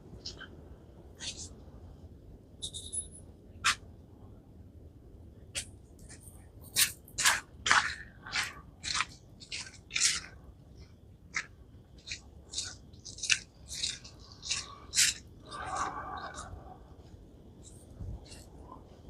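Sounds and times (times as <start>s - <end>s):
crunching footsteps: 6.8s - 16.5s.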